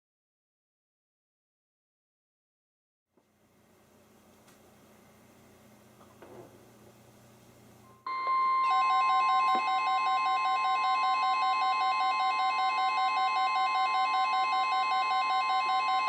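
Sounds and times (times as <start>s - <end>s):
steady warning alarm tone: 7.9s - 16.0s.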